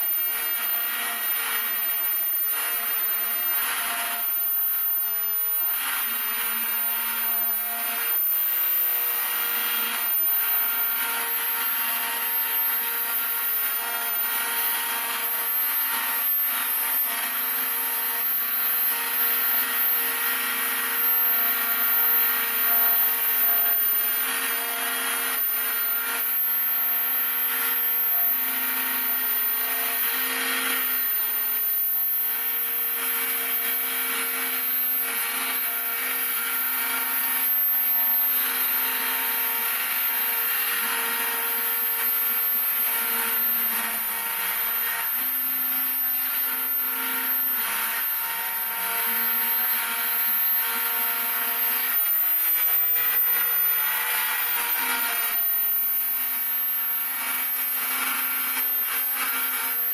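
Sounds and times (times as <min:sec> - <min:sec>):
router spindle whine: 0:00.0 - 0:59.9
router bit cutting noise: 0:56.3 - 0:59.9.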